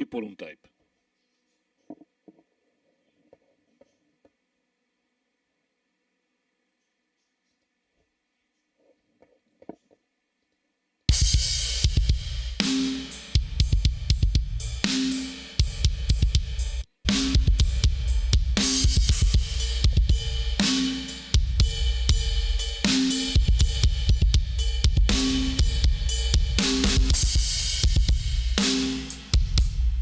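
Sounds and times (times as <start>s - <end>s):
drum kit playing a groove: 11.1s - 30.0s.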